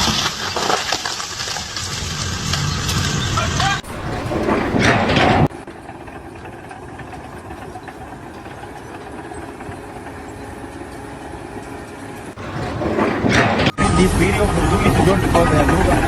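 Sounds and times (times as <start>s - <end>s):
engine idling: 1.8s - 16.0s
loud noisy burst: 12.3s - 16.0s.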